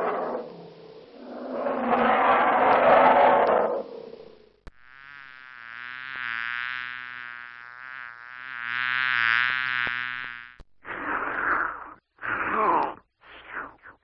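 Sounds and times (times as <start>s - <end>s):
bee buzzing in flight: 0.0s - 11.1s.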